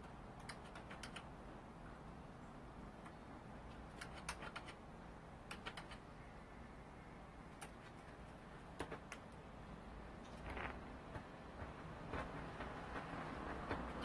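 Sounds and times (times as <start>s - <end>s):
faint background noise: 0.0s - 14.0s.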